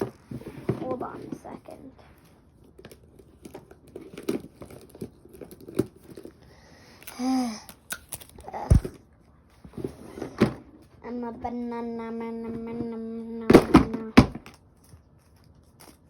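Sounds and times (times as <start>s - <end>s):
paper and tape crinkling: 0.0s - 8.8s, 14.5s - 16.0s.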